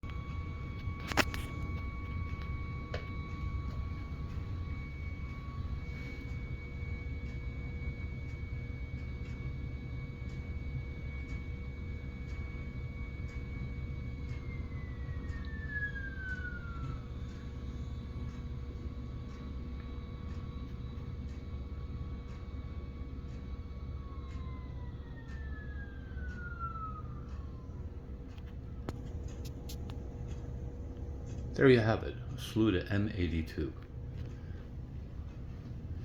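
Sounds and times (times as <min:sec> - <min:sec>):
stepper motor whining: 0:00.0 - 0:32.7.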